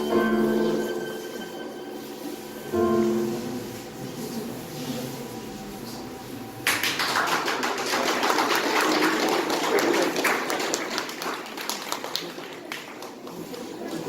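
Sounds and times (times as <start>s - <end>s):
crowd applauding: 6.6s - 14.0s.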